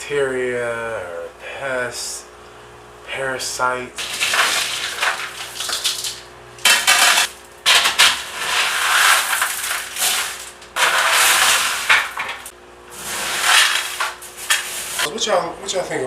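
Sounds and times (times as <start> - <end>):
gravel rattling and grinding: 4.0 - 12.5.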